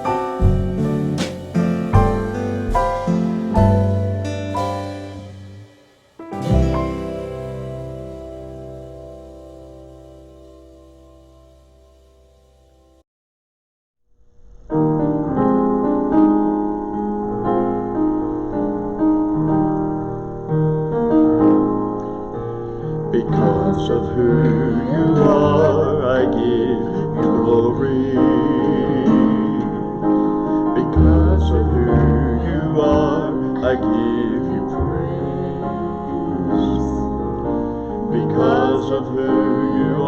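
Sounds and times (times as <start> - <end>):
keyboard playing sustained chords: 0.0 - 12.9.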